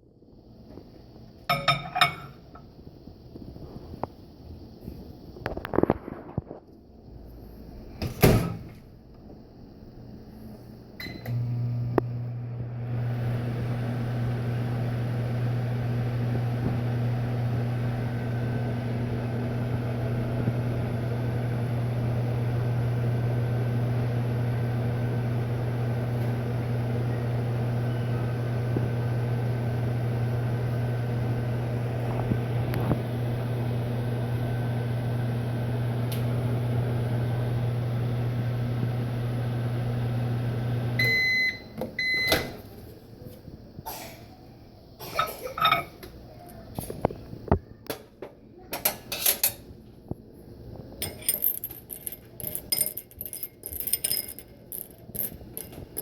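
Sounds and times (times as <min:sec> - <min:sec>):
microwave oven humming: 0:10.9 - 0:47.8.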